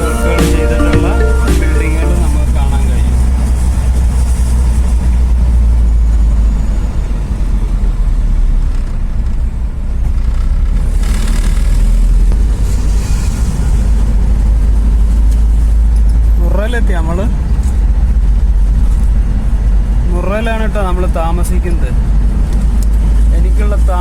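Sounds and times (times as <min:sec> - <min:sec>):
rushing noise: 0:00.0 - 0:04.8
van driving rumble: 0:02.1 - 0:24.0.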